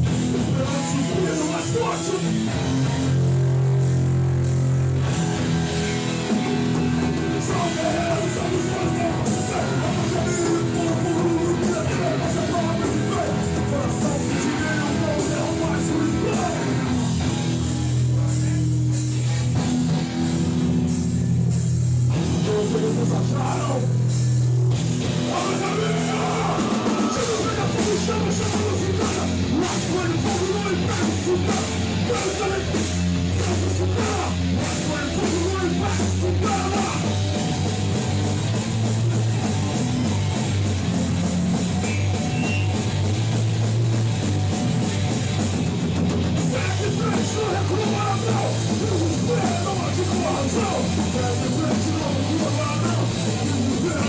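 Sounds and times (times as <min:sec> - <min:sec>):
punk band playing live: 0:00.0 - 0:54.0.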